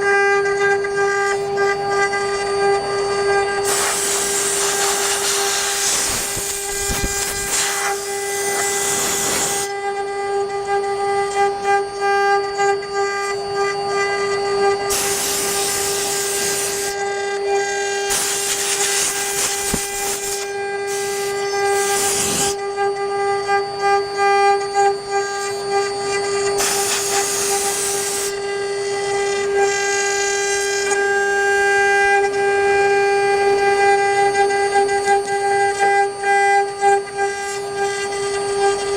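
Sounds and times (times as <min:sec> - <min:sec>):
router spindle high whine: 0:00.0 - 0:38.9
bit hissing cutting wood: 0:03.6 - 0:09.7, 0:14.9 - 0:17.0, 0:18.0 - 0:22.6, 0:26.5 - 0:28.4.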